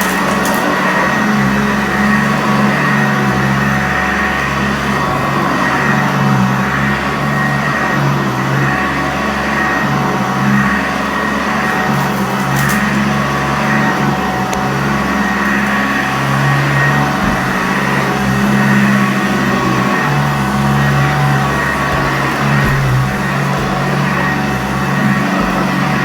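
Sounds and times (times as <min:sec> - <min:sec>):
vacuum cleaner running on carpet: 0:00.0 - 0:26.0.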